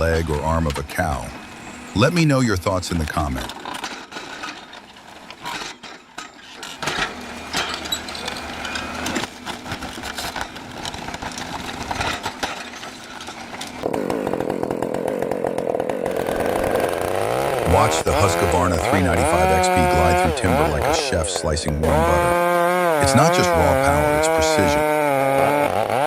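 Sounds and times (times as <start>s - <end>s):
chainsaw running: 0.0s - 26.0s
knocking and cracking: 3.5s - 15.6s.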